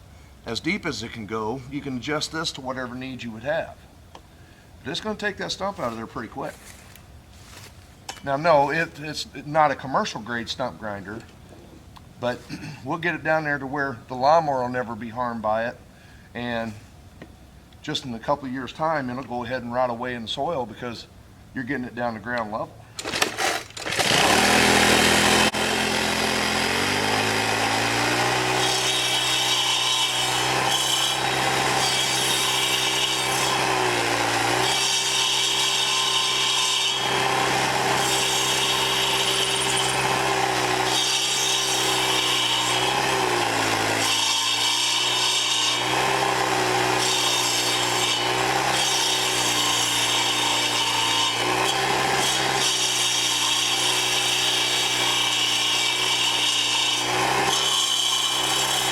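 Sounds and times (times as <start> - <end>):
saw blades grinding into wood: 22.4 - 58.9
small gas engine running: 23.0 - 29.4.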